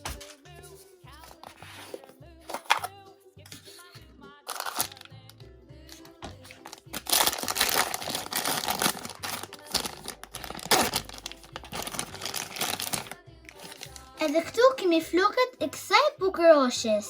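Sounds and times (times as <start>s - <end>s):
background music: 0.0s - 17.0s
plastic packaging crinkling: 4.5s - 5.1s, 6.4s - 14.4s.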